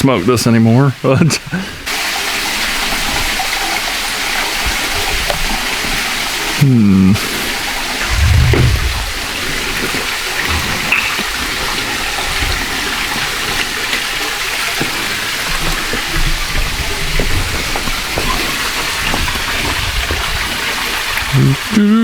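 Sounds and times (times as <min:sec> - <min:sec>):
water rushing down rocks: 0:00.1 - 0:21.8
faint low thumps: 0:08.0 - 0:09.3.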